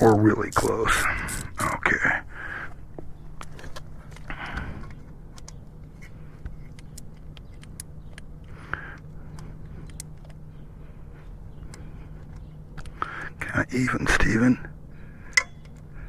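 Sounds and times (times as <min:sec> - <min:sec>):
steady low hum: 0:00.0 - 0:16.0
metal tools clicking and scraping: 0:15.3 - 0:15.8.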